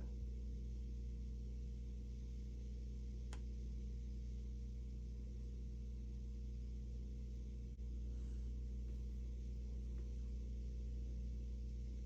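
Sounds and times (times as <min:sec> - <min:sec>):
low electrical hum: 0:00.0 - 0:12.0
faint click: 0:03.3 - 0:03.5.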